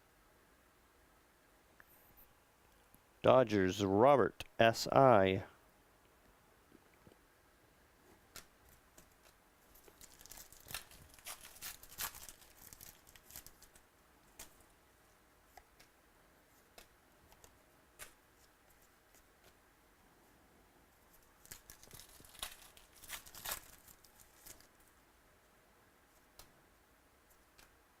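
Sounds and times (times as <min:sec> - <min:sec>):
cards rustling and crinkling: 0:08.2 - 0:14.6, 0:21.1 - 0:24.9.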